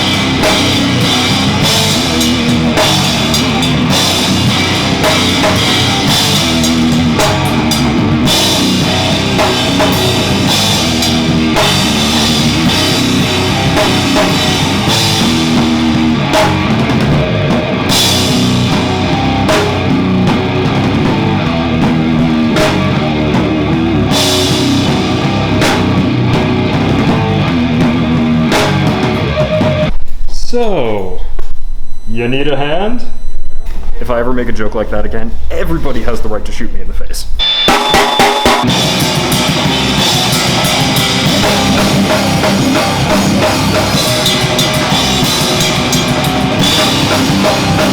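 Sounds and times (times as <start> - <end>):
distorted electric guitar: 0.0 - 30.4, 37.4 - 47.9
drum kit: 0.0 - 32.1, 37.2 - 47.9.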